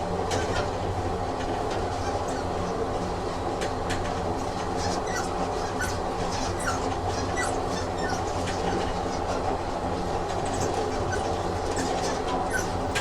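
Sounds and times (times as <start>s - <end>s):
train rumbling on rails: 0.0s - 13.0s
wheels squeaking: 10.5s - 13.0s.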